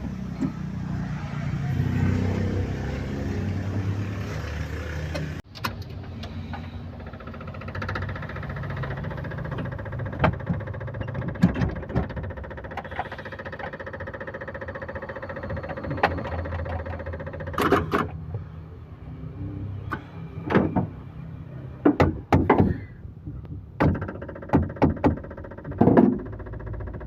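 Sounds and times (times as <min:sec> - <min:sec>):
van engine rumbling: 0:00.0 - 0:27.0
sharp clicks and knocks: 0:05.1 - 0:18.4, 0:21.8 - 0:27.0.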